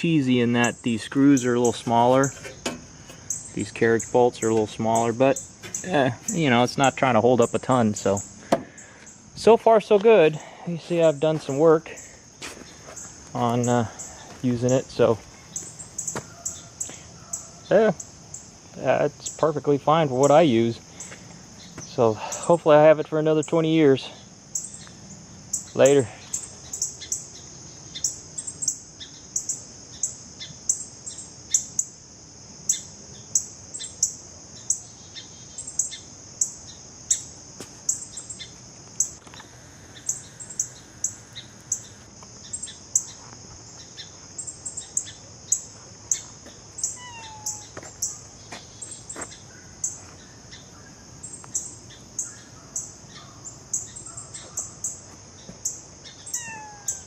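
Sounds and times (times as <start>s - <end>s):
bird chirping: 0.0s - 9.8s, 10.4s - 22.6s, 23.4s - 31.9s, 37.9s - 57.0s
steady high hiss: 0.0s - 57.0s
lower whistled bird calls: 44.0s - 49.1s, 56.0s - 57.0s.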